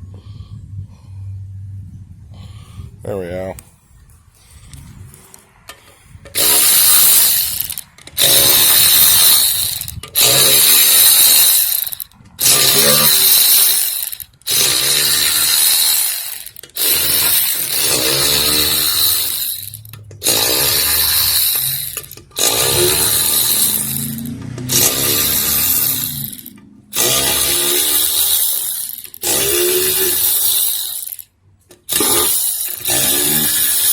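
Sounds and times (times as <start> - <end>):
power tool whining: 6.3 - 33.9.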